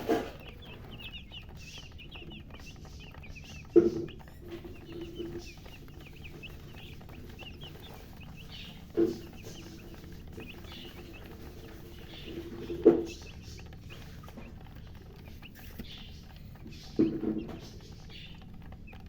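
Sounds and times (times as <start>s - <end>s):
chicks peeping: 0.0s - 19.0s.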